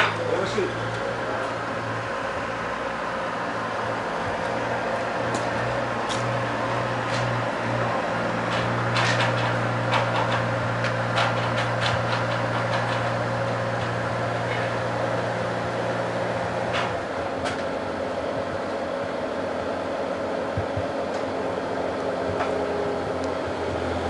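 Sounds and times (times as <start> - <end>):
knocks and clanks of work: 0.0 - 0.6, 5.2 - 15.6, 16.6 - 17.7, 22.2 - 23.8.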